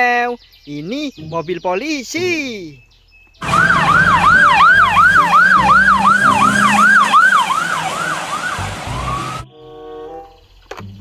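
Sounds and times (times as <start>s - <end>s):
police siren yelp: 3.4s - 9.5s.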